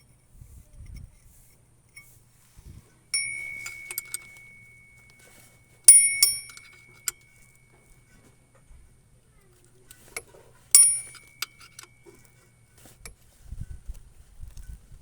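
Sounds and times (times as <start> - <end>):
metal object ringing when struck: 3.2 - 8.0, 10.8 - 12.2.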